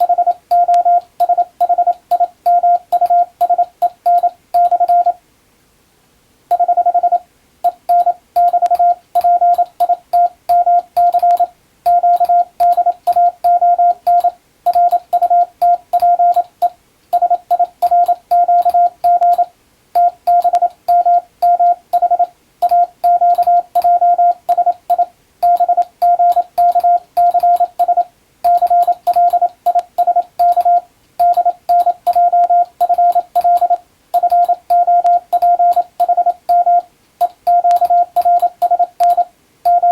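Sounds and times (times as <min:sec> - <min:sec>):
morse code beeps: 0:00.0 - 0:05.2, 0:06.5 - 0:39.9.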